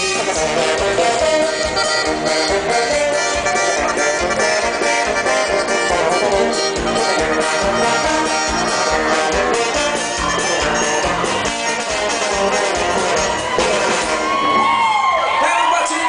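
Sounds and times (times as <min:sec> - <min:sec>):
accordion: 0:00.0 - 0:14.2
live dance band playing: 0:00.0 - 0:16.0.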